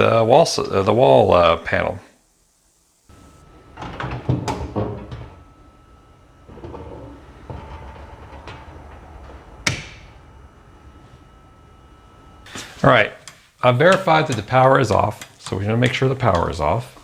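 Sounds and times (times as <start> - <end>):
rustling: 3.1 - 13.6
handling knocks and clicks: 6.5 - 11.5.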